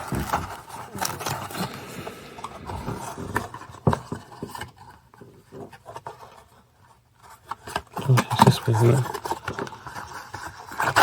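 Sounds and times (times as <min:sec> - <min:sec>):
cardboard box rubbing and scraping: 0:00.0 - 0:06.5.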